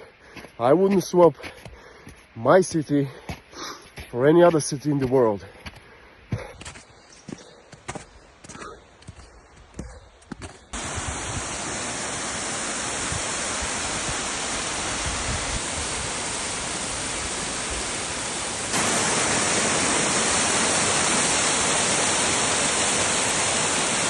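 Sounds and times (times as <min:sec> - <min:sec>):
mountain stream rushing: 0:10.8 - 0:24.0.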